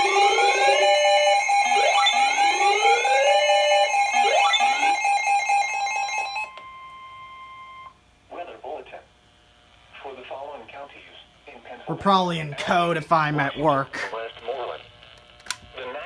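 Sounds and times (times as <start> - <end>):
electronic alert tones: 0.0 - 6.6.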